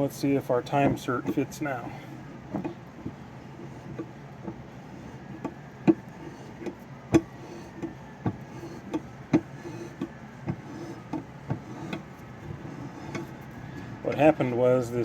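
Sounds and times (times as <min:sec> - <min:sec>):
sharp metallic clicks and knocks: 0:05.4 - 0:12.2.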